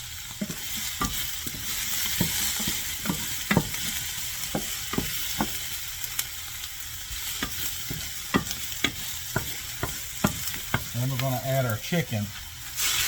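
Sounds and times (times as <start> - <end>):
vegetables sizzling in frying pan: 0.0 - 13.0
utensil scraping against pan: 0.4 - 5.6, 7.2 - 11.3.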